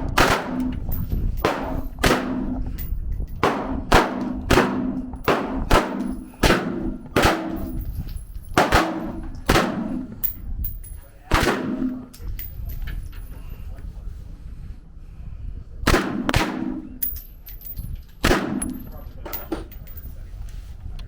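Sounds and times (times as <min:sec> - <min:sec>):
gunshots with ringing echo: 0:00.0 - 0:00.8, 0:01.4 - 0:02.6, 0:03.4 - 0:07.8, 0:08.6 - 0:10.2, 0:11.3 - 0:12.1, 0:15.8 - 0:17.1, 0:18.2 - 0:18.9.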